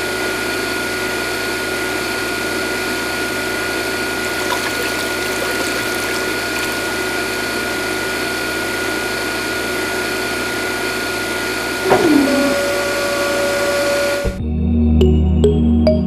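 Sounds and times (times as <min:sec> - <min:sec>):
electric water pump humming: 0:04.2 - 0:07.9
water noise: 0:04.2 - 0:07.9.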